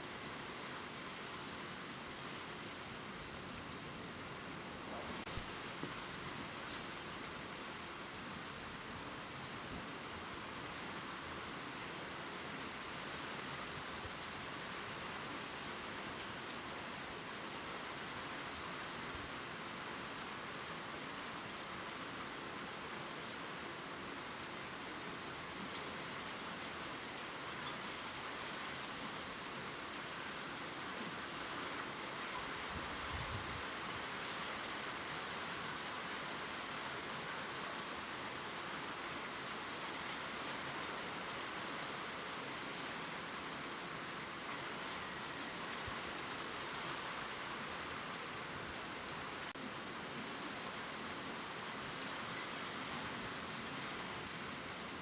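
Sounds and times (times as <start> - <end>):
gentle rain on leaves: 0.0 - 55.0.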